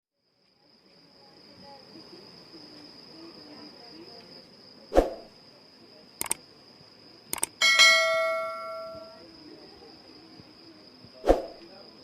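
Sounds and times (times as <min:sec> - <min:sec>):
night insects droning: 0:00.2 - 0:12.0
sharp clicks: 0:06.2 - 0:06.4, 0:07.3 - 0:07.6.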